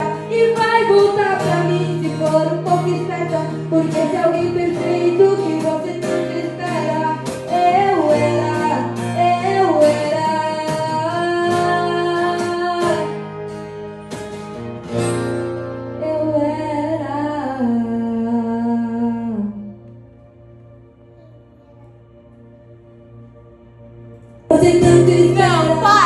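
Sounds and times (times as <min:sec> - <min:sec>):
woman singing: 0:00.0 - 0:13.3, 0:16.0 - 0:19.8, 0:24.5 - 0:26.0
strummed guitar: 0:00.0 - 0:20.0, 0:24.5 - 0:26.0.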